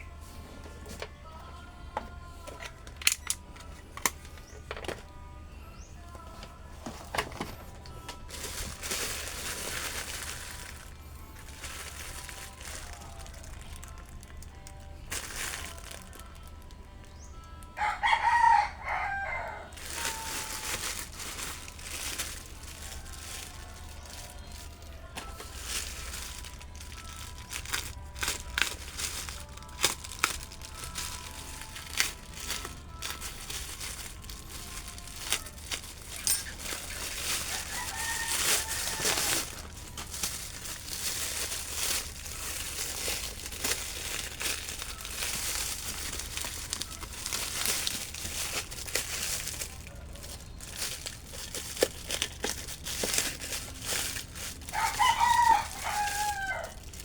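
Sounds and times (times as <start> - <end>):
packaging crinkling and rustling: 2.0 - 5.2, 6.0 - 57.0
rooster crowing: 17.8 - 20.7, 36.1 - 39.6, 54.6 - 56.9.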